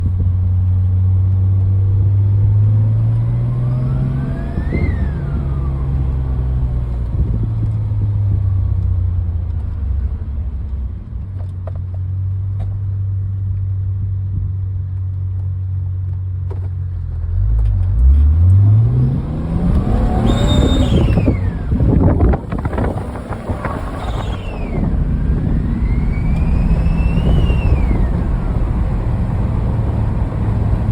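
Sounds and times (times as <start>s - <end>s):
car engine idling and revving: 0.0s - 30.9s
blow-off valve whistle: 3.6s - 6.2s, 19.8s - 21.8s, 23.5s - 28.7s.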